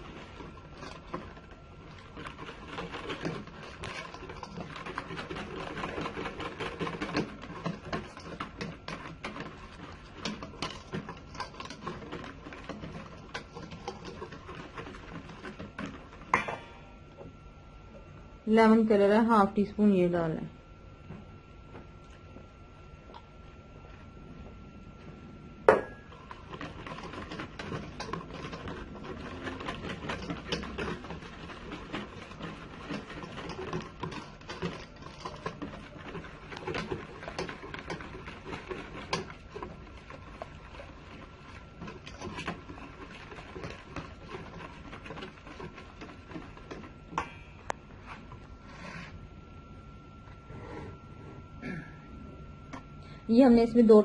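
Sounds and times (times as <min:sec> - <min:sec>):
spoon scraping in a bowl: 0:00.0 - 0:16.9, 0:25.8 - 0:49.2.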